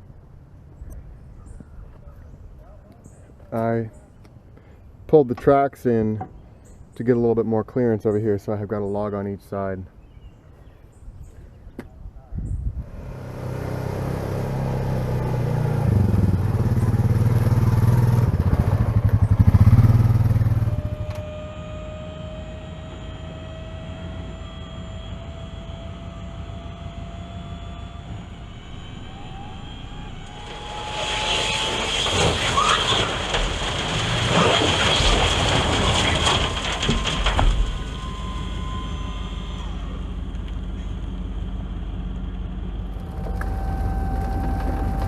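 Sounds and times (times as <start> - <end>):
diesel engine rumbling: 0.0 - 45.0
faint rising tone: 20.1 - 32.7.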